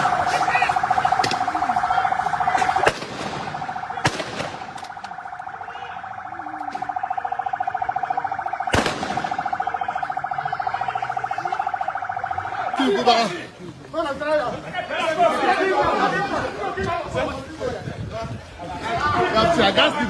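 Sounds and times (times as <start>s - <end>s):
electronic siren pulsing: 0.0s - 13.6s
sharp cracks: 2.5s - 5.5s, 8.6s - 9.7s.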